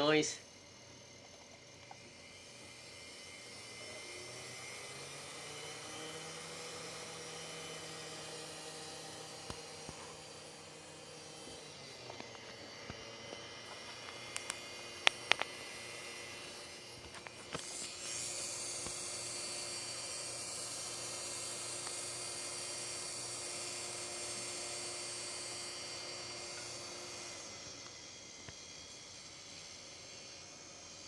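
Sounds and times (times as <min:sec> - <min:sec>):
cd drive spinning up: 0:00.0 - 0:31.0.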